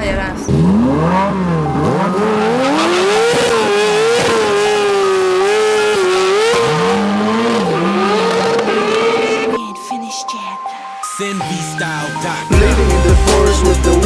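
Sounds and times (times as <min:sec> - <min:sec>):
vehicle engine revving: 0:00.0 - 0:09.6.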